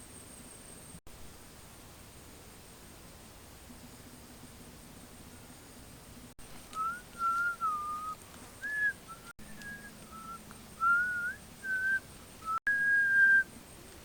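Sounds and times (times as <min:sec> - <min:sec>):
person whistling a tune: 0:06.8 - 0:13.4.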